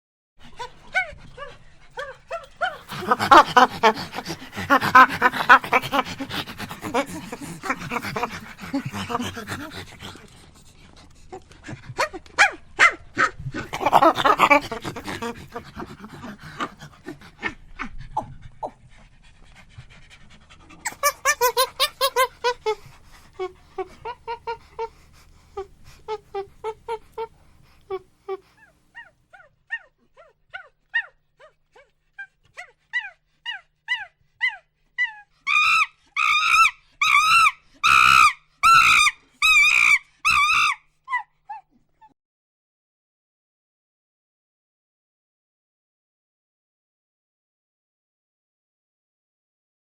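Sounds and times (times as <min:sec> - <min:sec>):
chimpanzee screaming: 0:02.0 - 0:09.8, 0:13.6 - 0:16.4, 0:20.8 - 0:22.8, 0:33.9 - 0:41.6
chimpanzee hooting: 0:02.0 - 0:10.3, 0:13.6 - 0:17.2, 0:20.8 - 0:25.0, 0:32.6 - 0:41.6.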